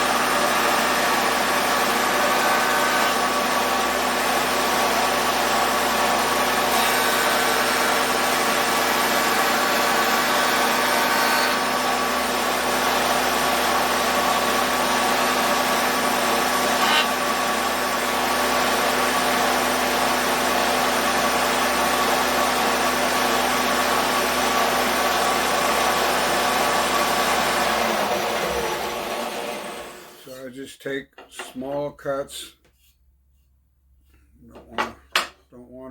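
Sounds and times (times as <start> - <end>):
motor winding down: 0.0 - 30.2
router motor spinning: 0.0 - 30.2.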